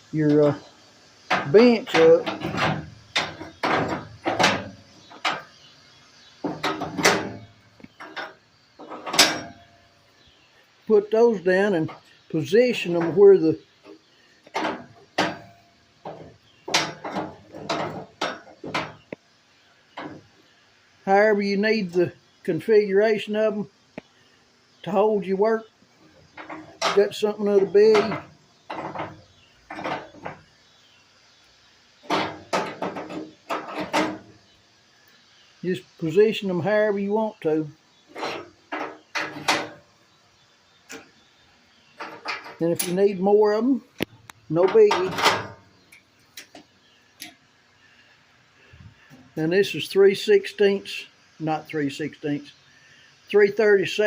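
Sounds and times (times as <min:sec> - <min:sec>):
metal pieces clanking on steel: 0:01.3 - 0:05.5, 0:06.4 - 0:09.8, 0:14.5 - 0:19.0, 0:26.4 - 0:30.4, 0:44.7 - 0:45.6
steel pieces clanking on metal table: 0:06.4 - 0:09.8, 0:26.3 - 0:30.4.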